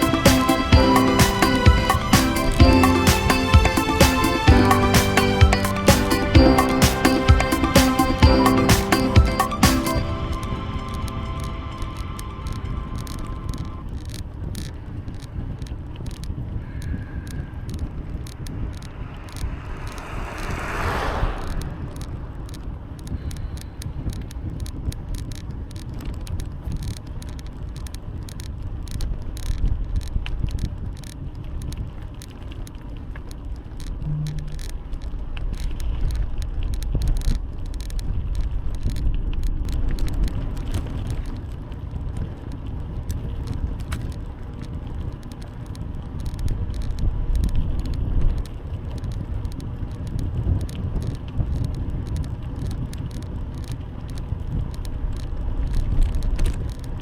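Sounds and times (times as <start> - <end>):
wind rumbling on microphone: 10.3 - 27.2, 28.0 - 57.0
bicycle tyre noise: 11.8 - 57.0
brief whoosh: 17.6 - 23.6
bike rattles and clicks: 23.1 - 34.0, 34.6 - 57.0.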